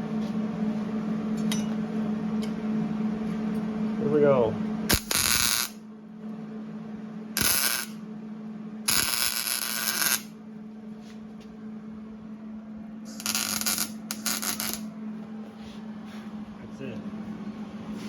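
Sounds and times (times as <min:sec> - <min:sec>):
steady low hum: 0:00.0 - 0:18.0
electric arc welding crackling: 0:04.9 - 0:05.8, 0:07.4 - 0:08.0, 0:08.9 - 0:10.3, 0:13.1 - 0:14.9.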